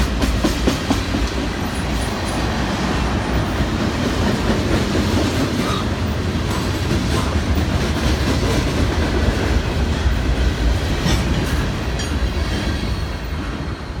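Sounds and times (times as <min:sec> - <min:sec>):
freight train wheels rumbling: 0:00.0 - 0:14.0.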